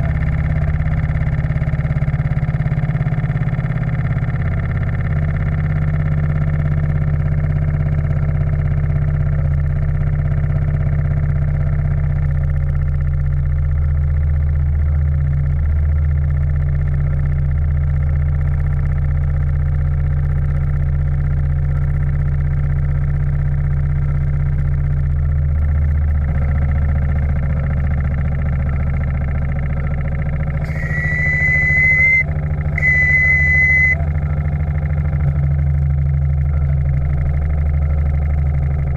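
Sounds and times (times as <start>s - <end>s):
steam whistle blasts: 30.6s - 34.2s
steam engine droning: 30.6s - 35.7s.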